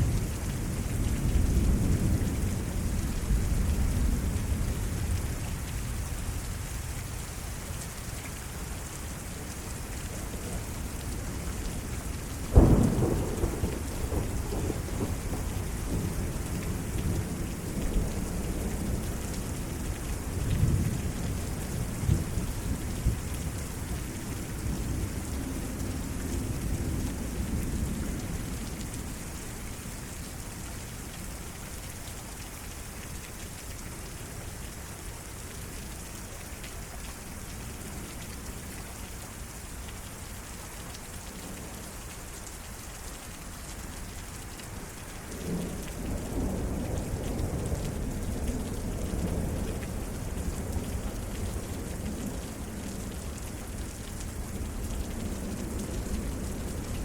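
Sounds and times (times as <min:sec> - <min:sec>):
steady rain falling: 0:00.0 - 0:57.0
thunder rumbling: 0:12.6 - 0:17.4.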